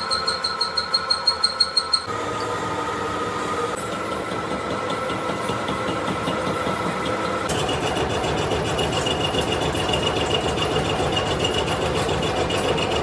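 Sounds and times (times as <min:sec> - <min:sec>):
lathe cutting metal squealing: 0:00.0 - 0:13.0.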